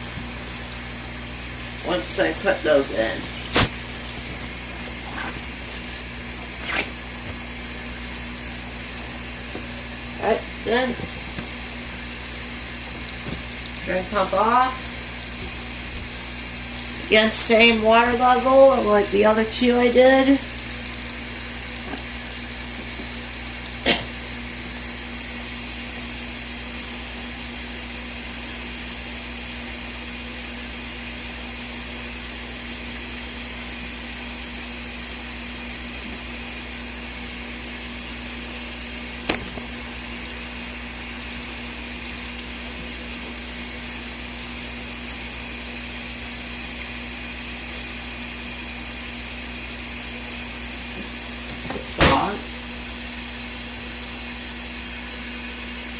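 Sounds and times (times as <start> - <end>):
washing machine motor hum: 0.0 - 55.9
sharp click: 3.5 - 3.8.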